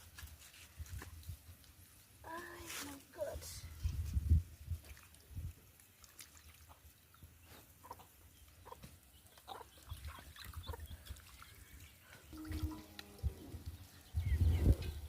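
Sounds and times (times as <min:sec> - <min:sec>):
faint chickens clucking: 0:07.4 - 0:11.1.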